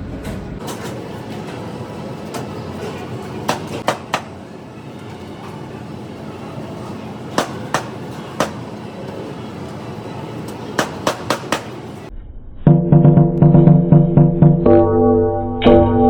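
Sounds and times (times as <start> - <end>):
food court hubbub: 0.0 - 12.1.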